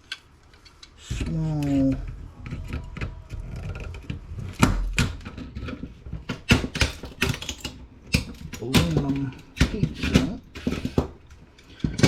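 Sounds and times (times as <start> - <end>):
heat sink pins snapping: 2.9 - 11.3.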